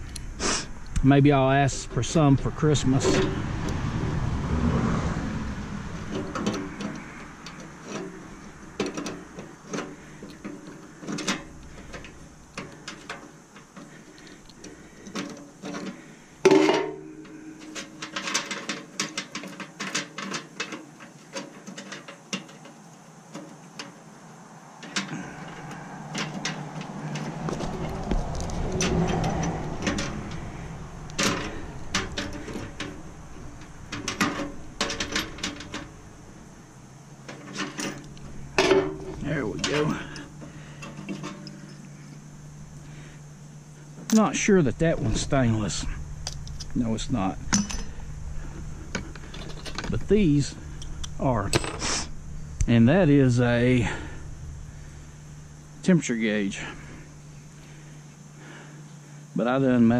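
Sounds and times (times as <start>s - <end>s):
ringing metal clank: 2.9s - 3.4s, 15.2s - 20.3s, 37.4s - 42.2s, 47.5s - 48.0s
metal clicks and knocks: 6.0s - 24.0s, 24.8s - 36.2s, 37.2s - 41.9s, 46.2s - 46.8s, 47.4s - 51.8s.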